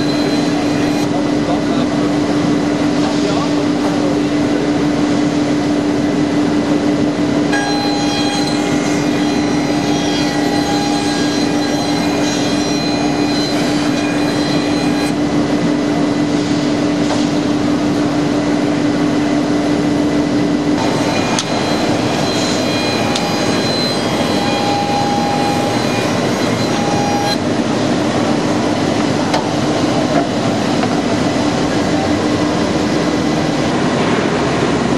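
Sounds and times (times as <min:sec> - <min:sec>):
high ringing tones: 0:00.0 - 0:01.1, 0:07.5 - 0:15.2, 0:20.8 - 0:27.5
bandsaw machine hum: 0:00.0 - 0:34.9.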